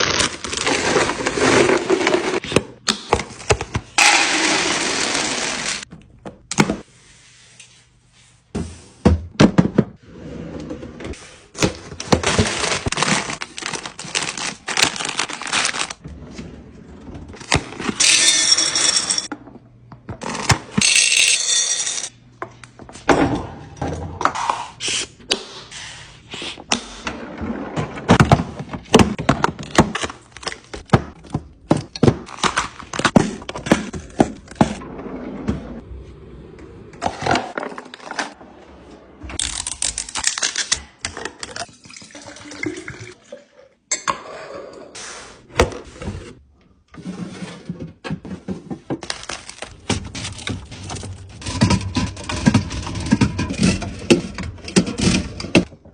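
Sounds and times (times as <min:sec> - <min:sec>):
plastic wrappers rustling: 0:12.1 - 0:16.0.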